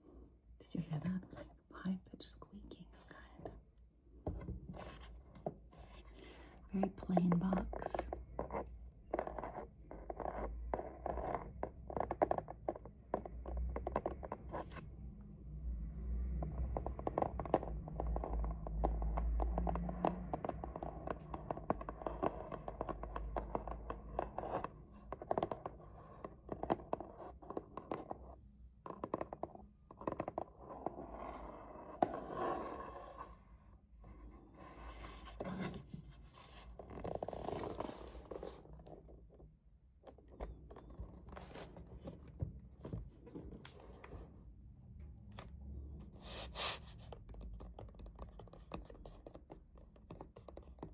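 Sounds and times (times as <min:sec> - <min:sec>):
fingers scratching cardboard box: 0:34.5 - 0:39.0.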